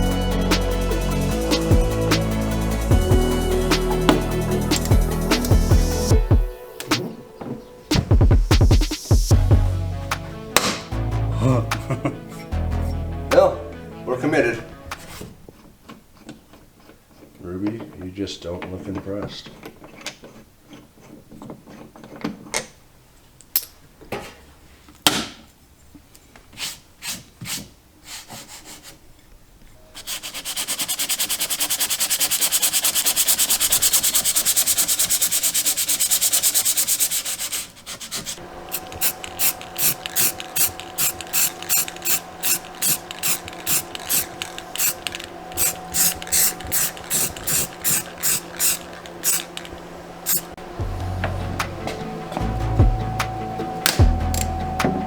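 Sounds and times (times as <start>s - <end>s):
back-and-forth tool strokes: 26.5s - 29.0s, 29.9s - 50.6s.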